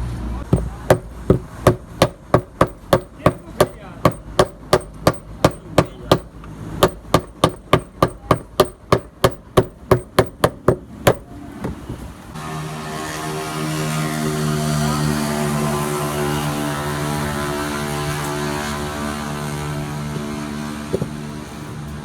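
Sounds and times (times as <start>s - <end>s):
steady machine hum: 0.0s - 11.2s
sharp hammer-like strikes: 0.4s - 11.2s.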